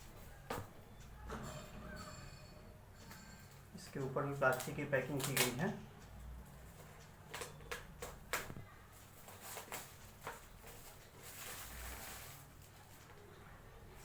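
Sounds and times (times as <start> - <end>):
plastic rustling: 3.8 - 5.8, 6.5 - 14.0
plastic wrapping crackling: 3.8 - 5.8, 6.4 - 14.0.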